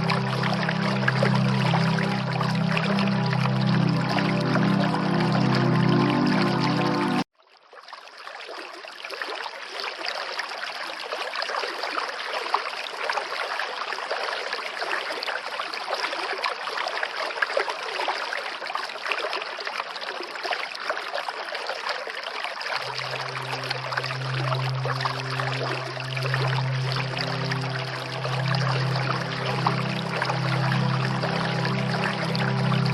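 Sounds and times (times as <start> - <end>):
low sustained music tones: 0.0 - 7.2, 22.8 - 32.9
running water: 0.0 - 32.9.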